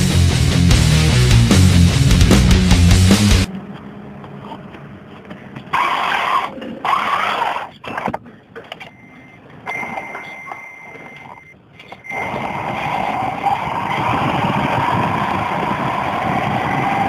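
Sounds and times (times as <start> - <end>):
music: 0.0 - 3.5
squealing and scraping: 3.5 - 9.0.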